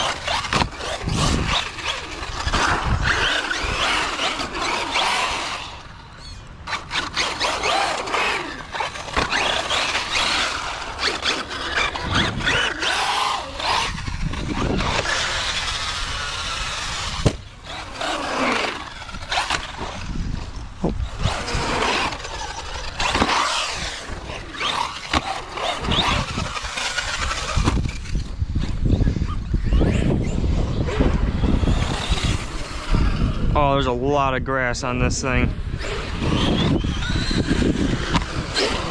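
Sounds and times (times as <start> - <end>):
electric motor whining: 0.0 - 33.6, 35.5 - 38.9
toy truck rattling and knocking: 21.3 - 28.3.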